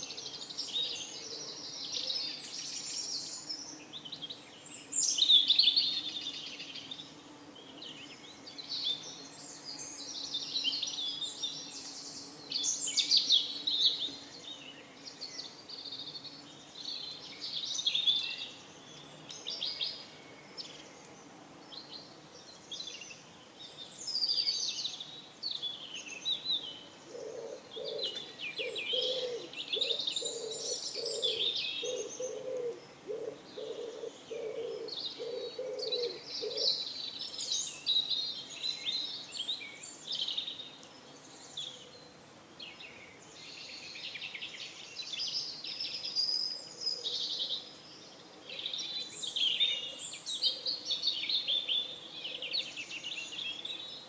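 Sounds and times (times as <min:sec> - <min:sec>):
faint background noise: 0:00.0 - 0:54.0
songbirds chirping: 0:00.0 - 0:54.0
pigeon cooing: 0:27.1 - 0:36.7.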